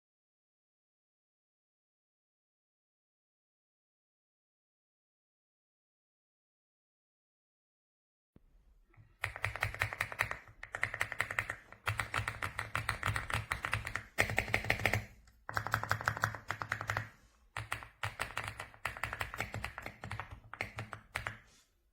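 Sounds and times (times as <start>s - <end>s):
fast mechanical keyboard typing: 9.2s - 21.4s.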